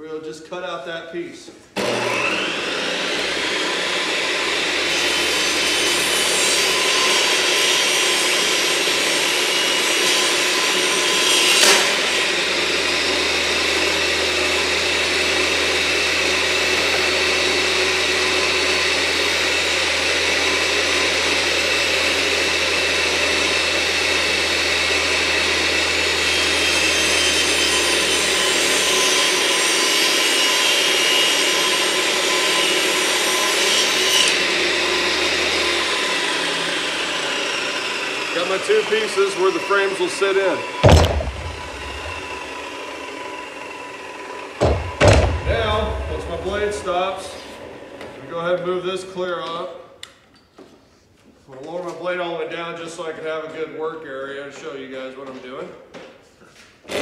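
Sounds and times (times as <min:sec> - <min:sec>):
table saw cutting wood: 0:01.8 - 0:48.0
sharp crack: 0:40.8 - 0:42.5, 0:44.6 - 0:46.8.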